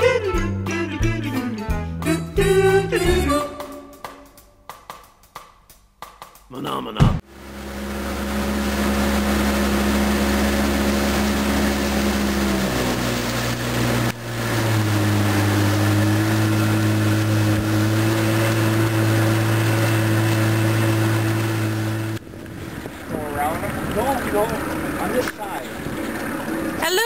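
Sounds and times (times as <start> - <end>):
motorboat engine running: 7.2 - 27.0.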